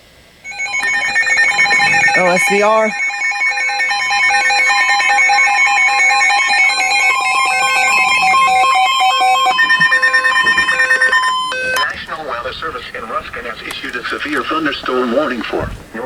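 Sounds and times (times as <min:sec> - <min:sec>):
steady electronic alert tone: 0:00.5 - 0:12.2
electronic tones stepping on and off: 0:00.5 - 0:15.3.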